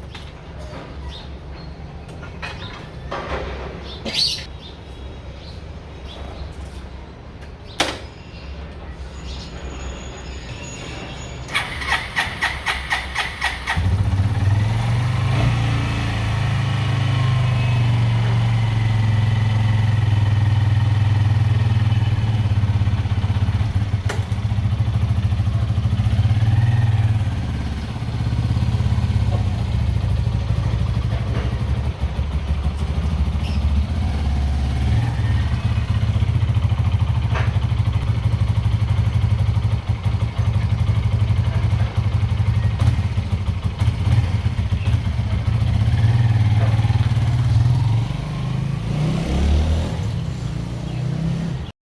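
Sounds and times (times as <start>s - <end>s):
single-cylinder engine running: 11.5s - 50.2s.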